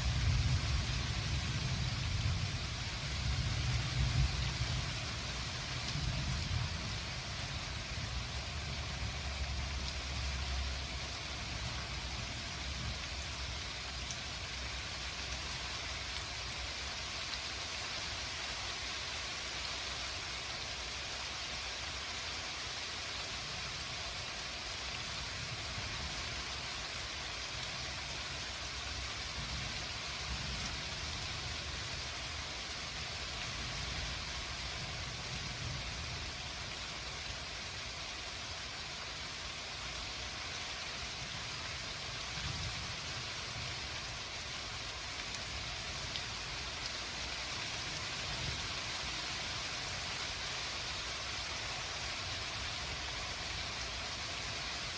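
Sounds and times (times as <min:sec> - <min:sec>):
low thunder rumble: 0:00.0 - 0:10.8
steady rain hiss: 0:00.0 - 0:54.9.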